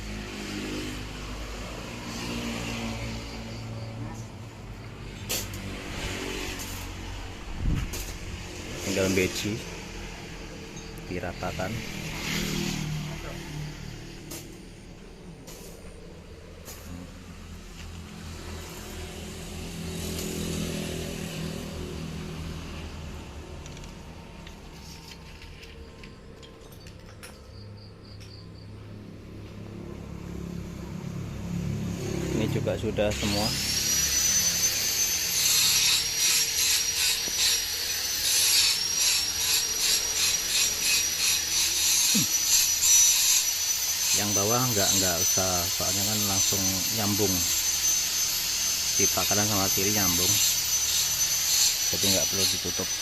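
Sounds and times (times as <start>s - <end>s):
hand tool rasping strokes: 7.6s - 9.8s, 10.6s - 16.0s, 16.6s - 21.8s, 32.5s - 53.0s.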